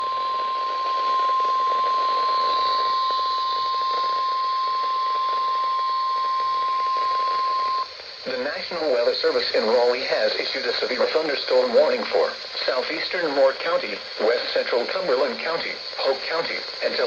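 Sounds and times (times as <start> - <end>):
steady alarm beep: 0.0 - 7.9
faint radio hiss: 0.0 - 17.0.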